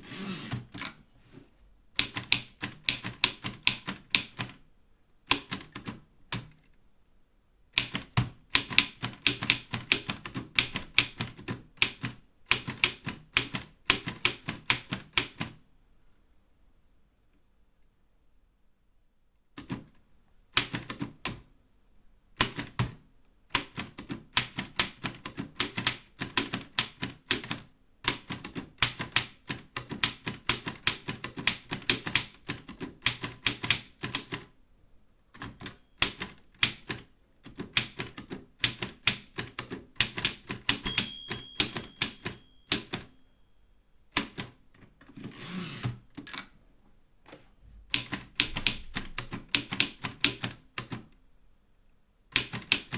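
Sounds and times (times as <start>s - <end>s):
typewriter carriage return rasp: 0.0s - 1.0s, 35.4s - 43.1s, 44.2s - 46.4s
typewriter key strikes: 35.4s - 43.2s
typewriter bell ringing: 40.8s - 43.4s.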